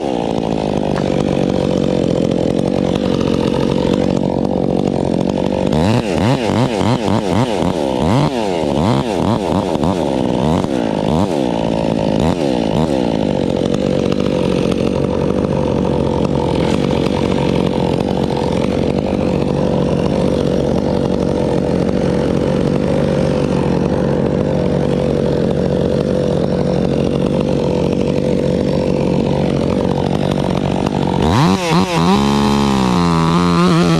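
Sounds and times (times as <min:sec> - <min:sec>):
chainsaw running at high speed: 0:00.0 - 0:33.9.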